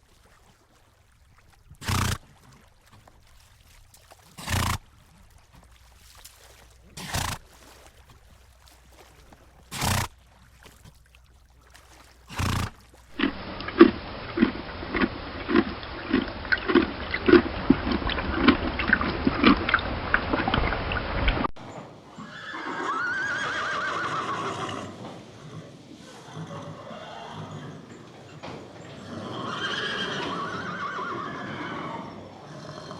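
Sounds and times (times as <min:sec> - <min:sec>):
horse snorting: 0:01.8 - 0:02.2, 0:04.4 - 0:04.8, 0:06.9 - 0:07.5, 0:09.7 - 0:10.2, 0:12.3 - 0:20.5, 0:22.1 - 0:32.9
horse chewing feed: 0:01.8 - 0:11.0, 0:11.8 - 0:32.9
horse whinny: 0:22.1 - 0:32.9.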